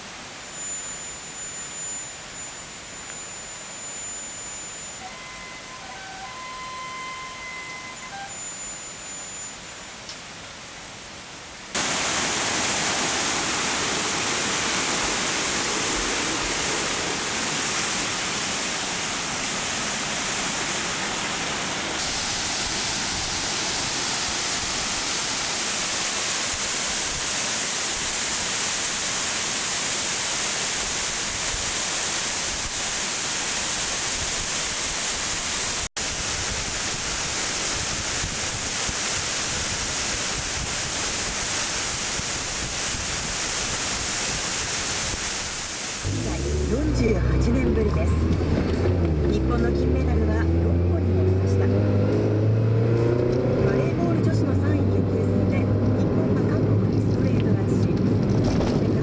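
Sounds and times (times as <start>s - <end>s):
waterfall rushing: 11.6s - 50.8s.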